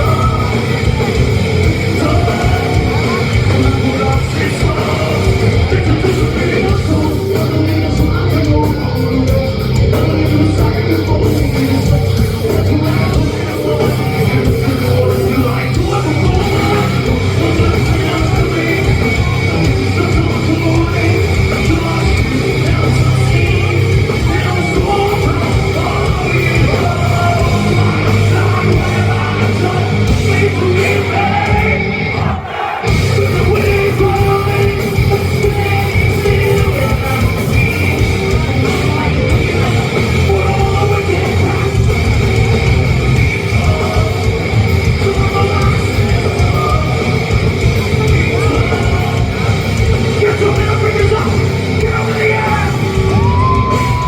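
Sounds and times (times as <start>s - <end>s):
shouted vocals: 0.0s - 9.6s, 11.6s - 54.0s
bass guitar: 0.0s - 54.0s
distorted electric guitars: 0.0s - 54.0s
drums: 0.0s - 54.0s.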